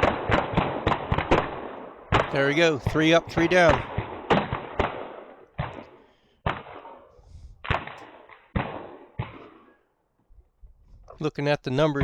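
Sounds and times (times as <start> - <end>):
pistol shots with echo: 0.0 - 9.8.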